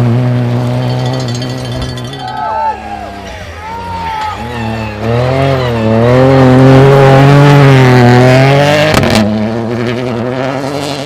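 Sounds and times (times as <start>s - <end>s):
car engine at high revs: 0.0s - 2.1s, 4.4s - 11.0s.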